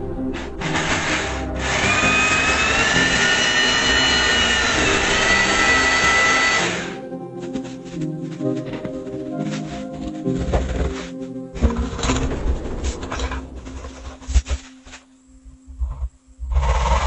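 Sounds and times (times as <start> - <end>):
background music: 0.0 - 17.0
power tool whining: 0.3 - 7.0.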